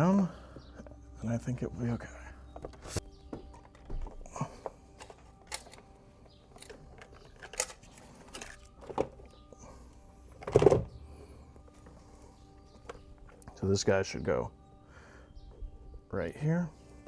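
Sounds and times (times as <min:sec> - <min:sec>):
clicks and knocks of tools: 0:02.6 - 0:09.4.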